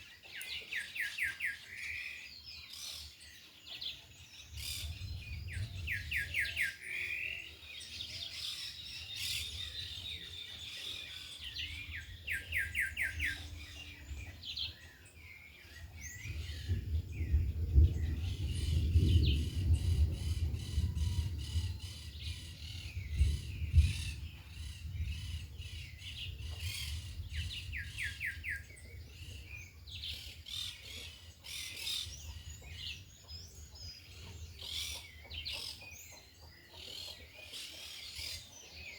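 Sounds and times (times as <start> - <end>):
birds chirping: 0.0 - 38.9
wind buffeting microphone: 4.4 - 6.9, 8.3 - 30.7.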